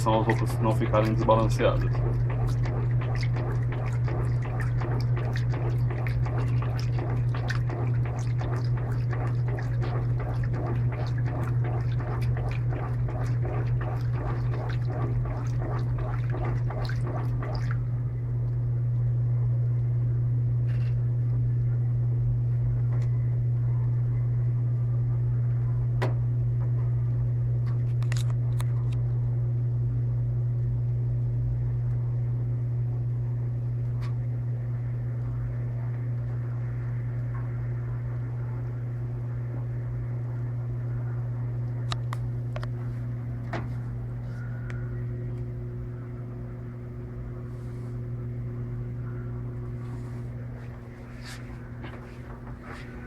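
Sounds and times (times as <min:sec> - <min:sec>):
washing machine agitator churning: 0:00.0 - 0:18.6, 0:49.6 - 0:53.0
washing machine hum: 0:00.0 - 0:53.0.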